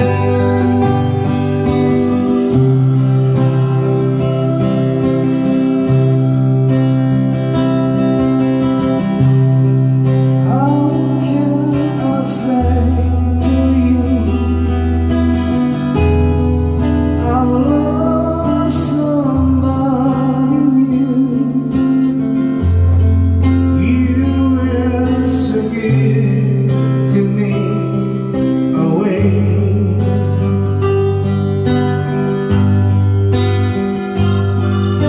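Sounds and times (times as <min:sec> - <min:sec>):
melodic line over bass notes: 0:00.0 - 0:11.7
acoustic guitar strumming: 0:00.0 - 0:35.0.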